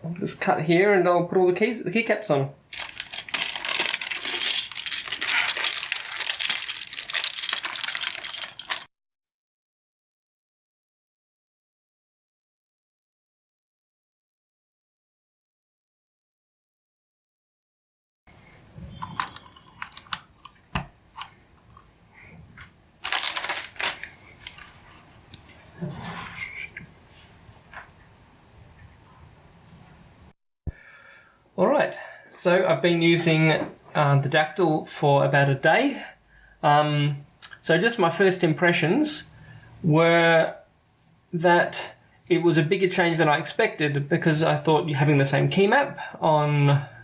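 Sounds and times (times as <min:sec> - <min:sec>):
plastic keycaps clattering: 0:02.7 - 0:08.9, 0:23.0 - 0:24.5.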